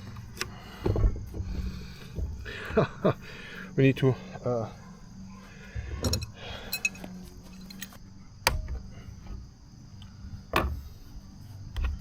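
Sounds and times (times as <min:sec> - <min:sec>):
handling noise: 0:05.8 - 0:08.0.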